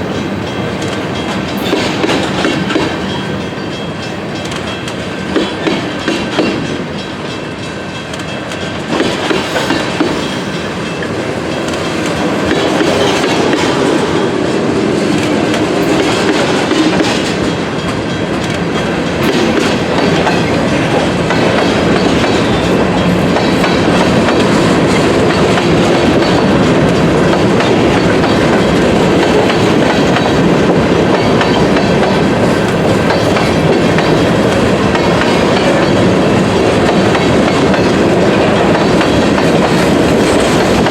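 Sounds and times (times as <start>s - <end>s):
freight train rumbling past: 0.0s - 40.9s
wheels clicking over rail joints: 0.1s - 14.4s, 15.0s - 40.9s.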